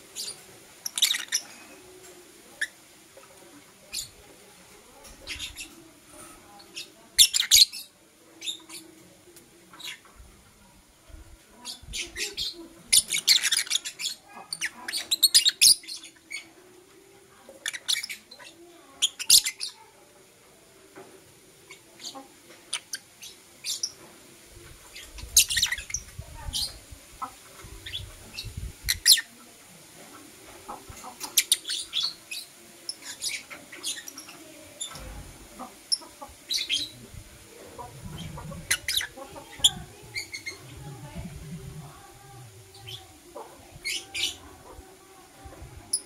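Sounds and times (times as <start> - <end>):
lovebirds chirping: 30.9 - 44.8
low rumble: 39.6 - 42.8.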